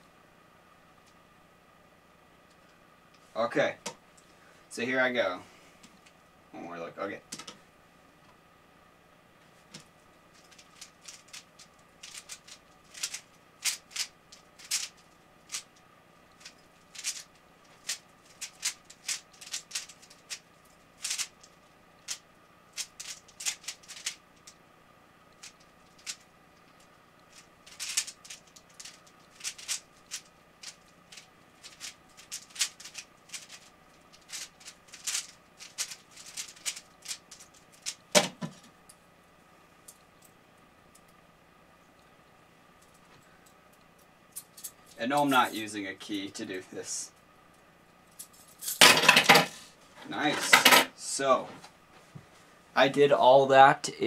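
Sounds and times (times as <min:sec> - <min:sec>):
speed cube clacking: 0:10.4 - 0:15.7, 0:16.4 - 0:20.4, 0:21.0 - 0:21.3, 0:22.0 - 0:24.2, 0:25.4 - 0:26.2, 0:27.3 - 0:38.0.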